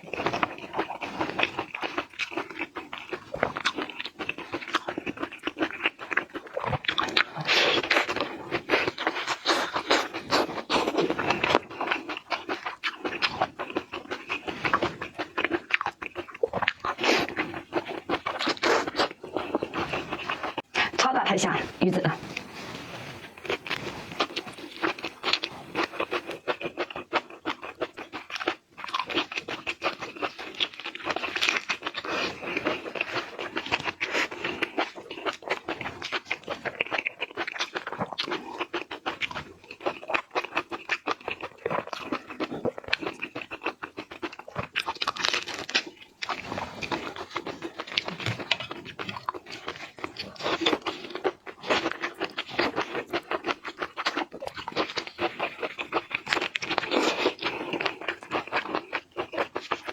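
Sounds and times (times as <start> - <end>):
person chewing crunchy food: 0.0 - 59.9.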